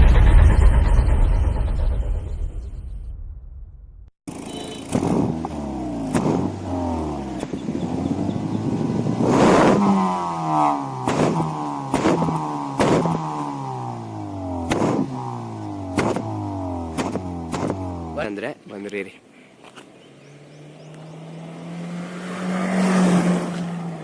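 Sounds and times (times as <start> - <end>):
car engine revving: 4.3 - 18.2, 20.2 - 24.0
exhaust cracks: 4.8 - 6.6, 11.0 - 13.4, 14.6 - 18.4.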